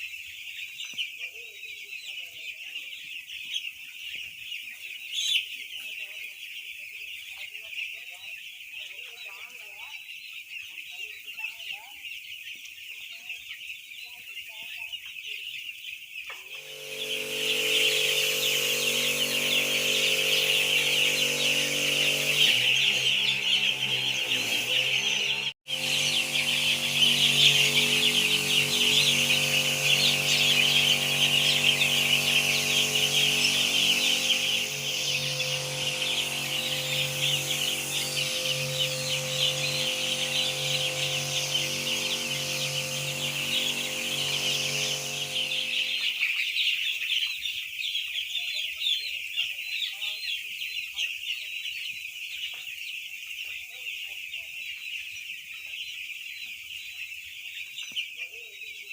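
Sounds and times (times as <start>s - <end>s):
chicks peeping: 0.0s - 58.9s
low hum: 16.6s - 46.2s.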